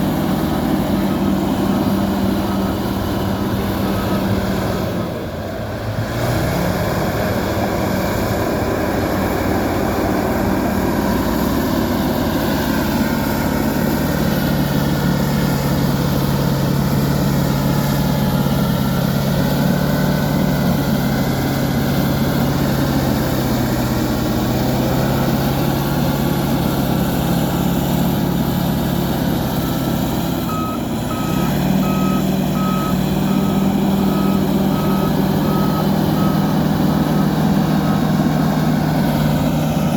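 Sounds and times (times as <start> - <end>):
bulldozer diesel engine running: 0.0 - 39.9
reversing alarm beeping: 29.5 - 38.4.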